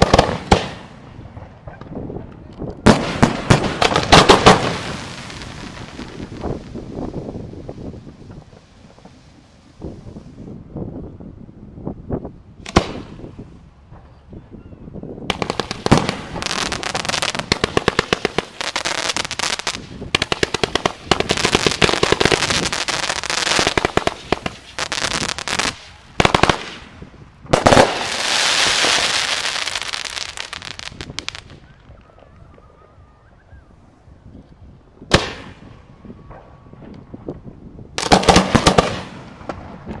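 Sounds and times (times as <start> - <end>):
rapid firework barrage: 0.0 - 1.8, 2.9 - 10.4, 12.6 - 13.4, 15.3 - 31.6, 38.0 - 40.0
fireworks bangs: 0.0 - 10.4, 12.6 - 14.2, 15.3 - 32.0, 35.1 - 40.0
high firework crackle: 0.0 - 10.5, 15.3 - 32.1, 35.1 - 40.0.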